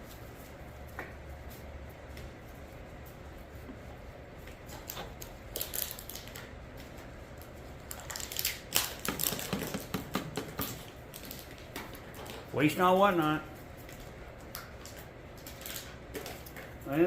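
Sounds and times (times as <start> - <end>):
plastic bottles crinkling and clicking: 4.8 - 12.5, 13.8 - 16.8.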